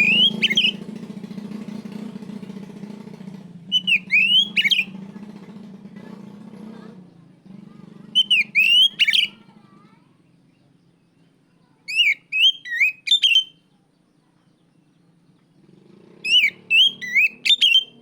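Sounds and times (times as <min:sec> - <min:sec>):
bird whistled calls: 0:00.0 - 0:00.8, 0:03.7 - 0:05.0, 0:08.2 - 0:09.4, 0:11.9 - 0:13.7, 0:16.2 - 0:18.0
faint low hum: 0:03.4 - 0:12.0.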